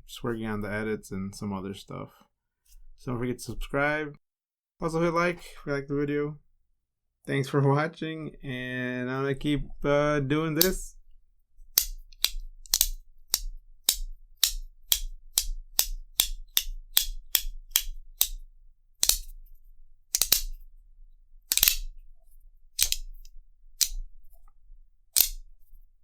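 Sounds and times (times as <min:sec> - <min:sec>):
magnetic fidget coin clicking: 0:11.7 - 0:18.4, 0:19.0 - 0:19.4, 0:20.2 - 0:20.6, 0:21.5 - 0:21.9, 0:22.8 - 0:24.0, 0:25.2 - 0:25.5.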